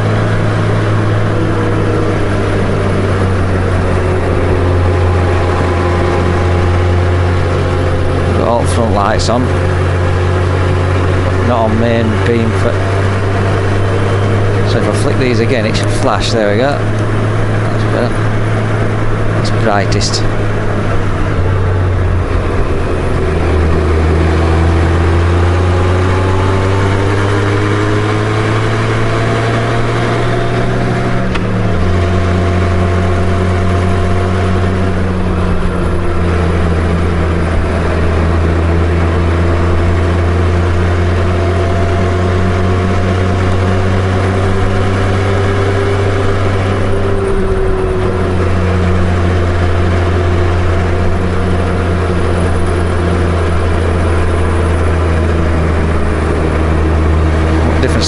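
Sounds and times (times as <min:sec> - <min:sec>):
motorcycle engine running: 0:00.0 - 0:58.0.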